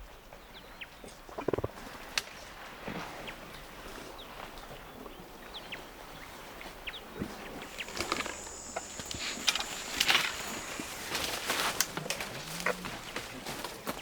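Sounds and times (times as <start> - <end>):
bird chirps: 7.6 - 11.1
high insect buzz: 7.6 - 12.9
vegetation crackling and rustling: 7.6 - 14.0.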